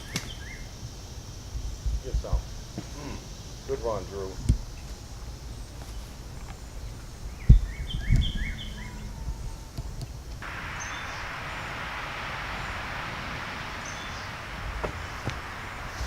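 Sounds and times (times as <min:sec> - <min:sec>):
bird chirping: 0:00.0 - 0:16.0
steady rushing noise: 0:10.1 - 0:16.0
dull thumps: 0:14.3 - 0:16.0.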